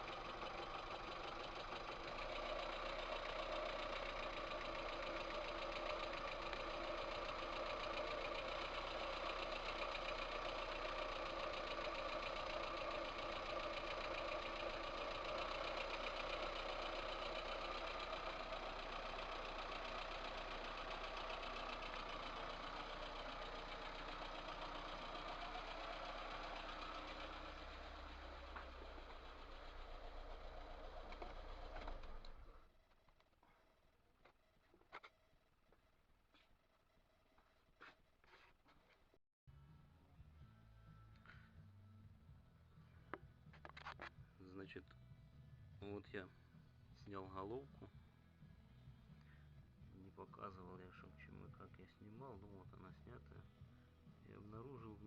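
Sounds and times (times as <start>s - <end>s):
engine knocking: 0.0s - 32.6s
car engine idling: 0.0s - 32.8s.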